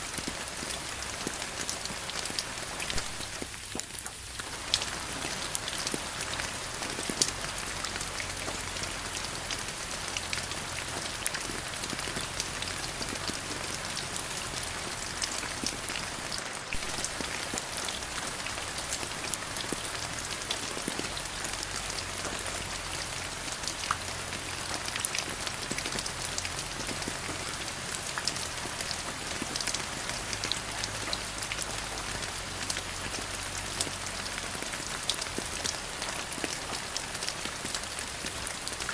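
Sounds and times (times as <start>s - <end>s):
rain falling: 0.0s - 38.9s
sharp raindrop impacts: 0.1s - 9.0s.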